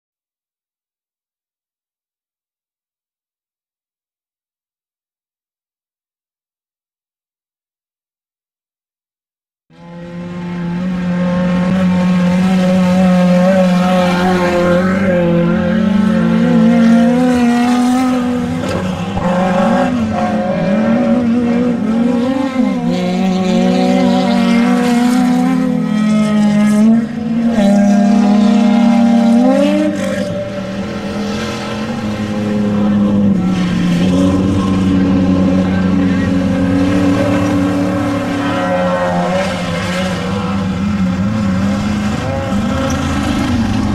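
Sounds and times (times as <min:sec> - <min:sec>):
race vehicle engine revving: 0:09.7 - 0:43.9.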